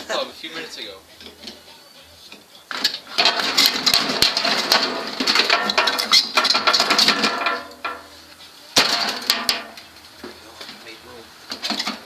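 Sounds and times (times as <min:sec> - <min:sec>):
metal clattering and scraping: 0:02.7 - 0:08.2, 0:08.8 - 0:12.0.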